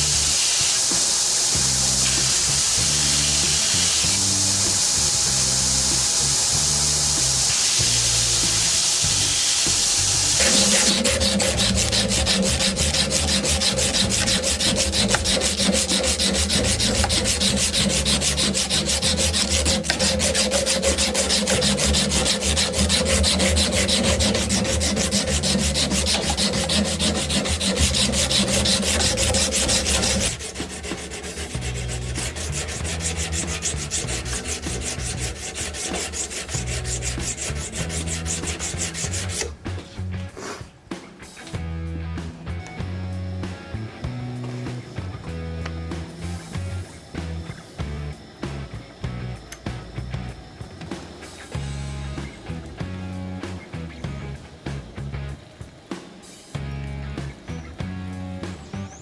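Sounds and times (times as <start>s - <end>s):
knife being sanded: 0.0s - 39.6s.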